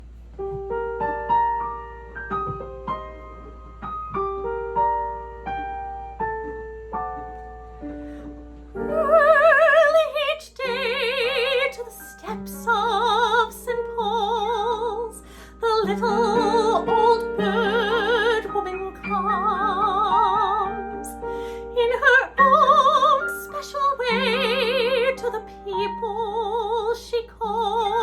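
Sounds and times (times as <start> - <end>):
solo piano: 0.0 - 28.0
woman singing with vibrato: 8.8 - 28.0.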